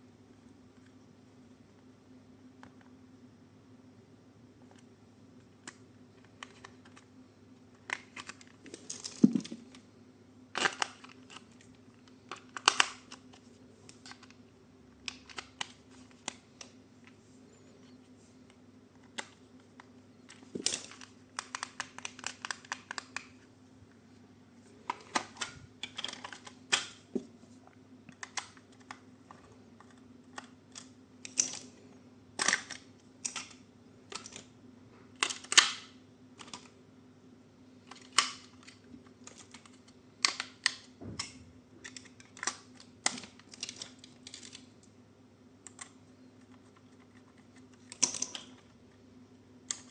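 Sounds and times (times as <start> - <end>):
plastic and cardboard rustling: 7.9 - 9.8.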